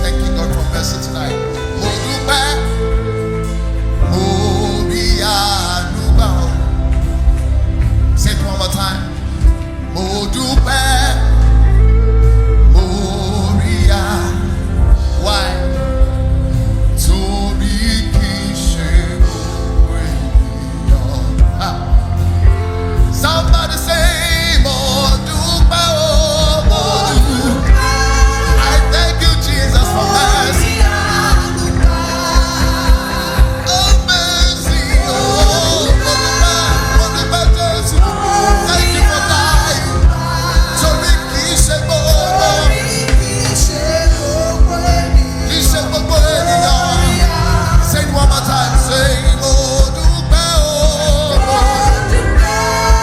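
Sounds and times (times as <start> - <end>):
keyboard chords: 0.0 - 53.0
steady drum beat: 13.8 - 53.0
voices singing: 23.3 - 53.0.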